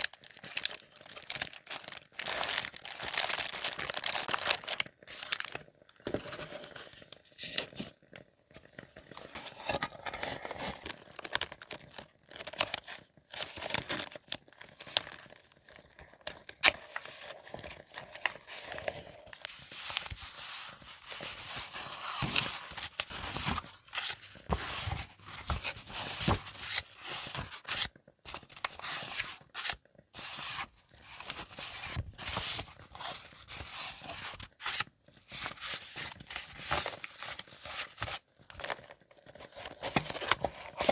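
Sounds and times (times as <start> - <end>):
paper rustling and tearing: 0.0 - 6.7, 16.6 - 38.8, 39.4 - 40.9.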